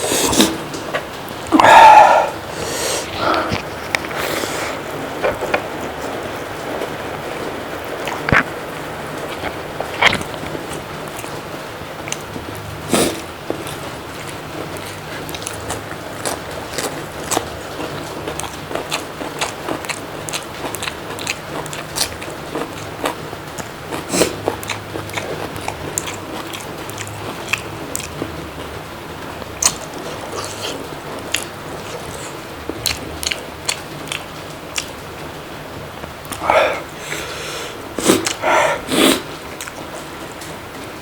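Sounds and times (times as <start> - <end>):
mouth clicks and crunches: 1.4 - 6.0, 7.8 - 28.7, 29.6 - 35.0, 36.0 - 37.3, 38.0 - 39.8
person chewing and biting food: 7.8 - 11.4, 12.9 - 28.3, 29.6 - 34.9, 38.0 - 39.8.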